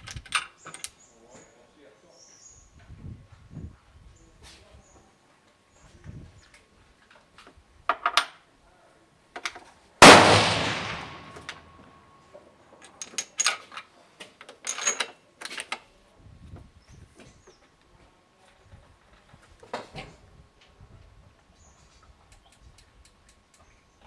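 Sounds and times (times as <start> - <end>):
rifle shot: 10.0 - 11.8.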